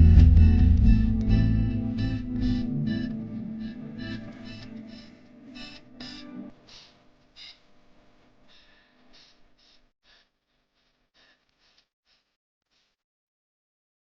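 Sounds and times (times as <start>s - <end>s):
faint background music: 0.0s - 6.8s.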